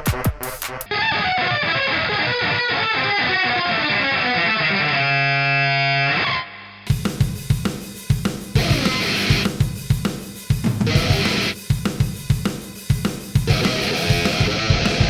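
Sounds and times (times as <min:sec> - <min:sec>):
drum beat: 0:00.0 - 0:00.9, 0:06.9 - 0:15.0.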